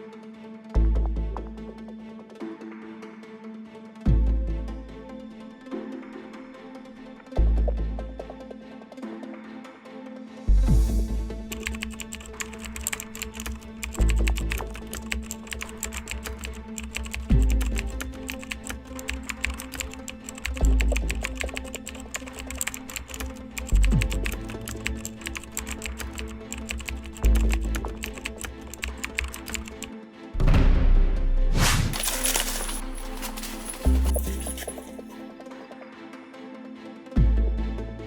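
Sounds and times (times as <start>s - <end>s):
fast ticking percussion: 11.5s - 29.9s.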